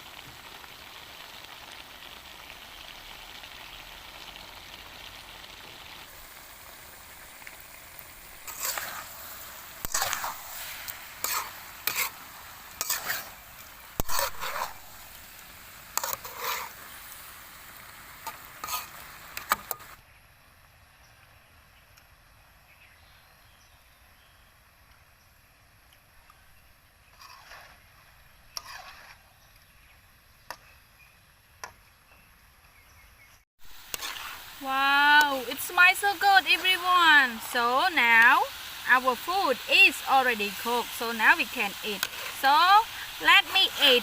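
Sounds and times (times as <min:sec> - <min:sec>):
food sizzling in a pan: 0:00.0 - 0:20.0, 0:27.1 - 0:29.1, 0:33.6 - 0:44.0
utensil scraping a pan: 0:08.3 - 0:15.2, 0:15.9 - 0:17.0, 0:18.2 - 0:20.0, 0:27.1 - 0:27.9, 0:28.5 - 0:29.4, 0:33.8 - 0:34.5, 0:41.5 - 0:44.0.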